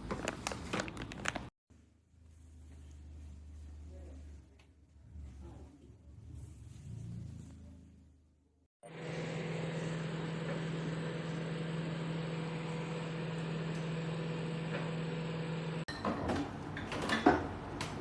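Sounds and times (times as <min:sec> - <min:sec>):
microwave oven humming: 0:08.8 - 0:18.0.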